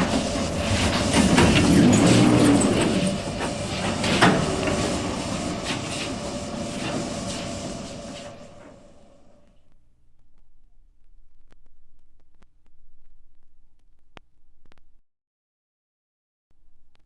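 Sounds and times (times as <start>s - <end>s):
train rattling and clanking: 0.0s - 9.4s.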